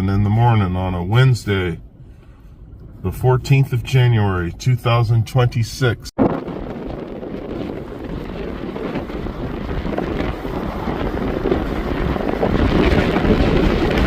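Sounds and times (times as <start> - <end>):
strong wind on microphone: 6.2 - 14.0.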